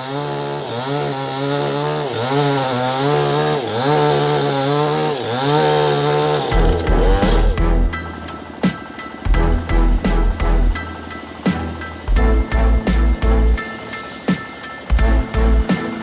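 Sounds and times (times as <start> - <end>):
sawmill saw engine: 0.0 - 16.0
music with thumping beat: 6.6 - 16.0.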